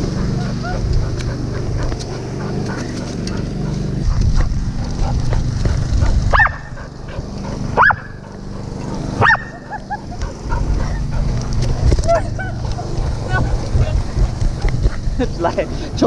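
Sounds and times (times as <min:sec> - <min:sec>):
low steady rumble: 0:00.0 - 0:16.0
dog barking: 0:06.3 - 0:06.8, 0:07.8 - 0:08.2, 0:09.2 - 0:10.0.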